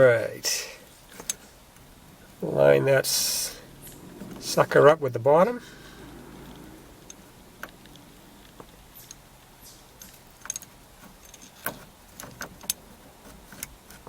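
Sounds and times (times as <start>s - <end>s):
small metallic clicks: 1.0s - 2.4s, 6.4s - 14.0s.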